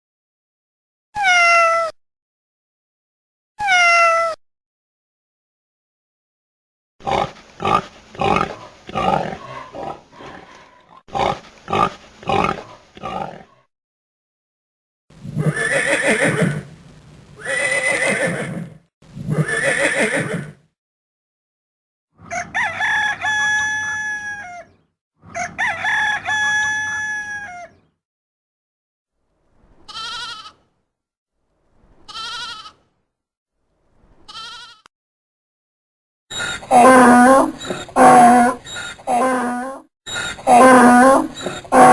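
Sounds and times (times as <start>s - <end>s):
horse whinnying: 15.4s - 16.7s, 17.4s - 20.6s, 36.4s - 41.9s
quavering animal bleats: 29.9s - 30.6s, 32.1s - 32.8s, 34.3s - 34.9s, 36.4s - 41.9s.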